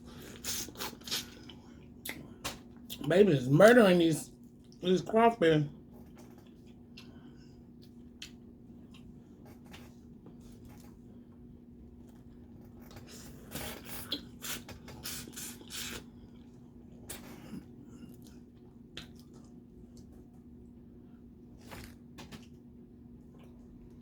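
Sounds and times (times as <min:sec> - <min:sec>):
faint steady hum: 0:00.0 - 0:24.0
wet sucking and slurping: 0:13.1 - 0:16.1.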